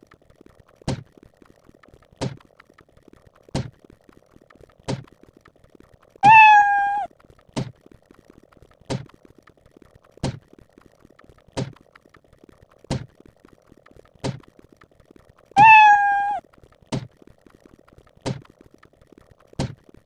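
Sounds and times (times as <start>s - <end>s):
cat meow sound effect: 6.2s - 7.1s, 15.6s - 16.4s.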